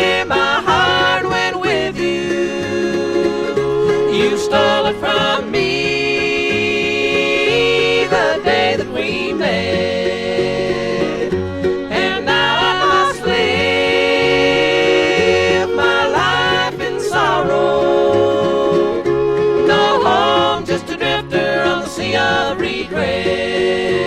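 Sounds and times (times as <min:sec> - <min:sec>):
bluegrass band playing: 0:00.0 - 0:24.0
person singing lead vocal: 0:00.0 - 0:24.0.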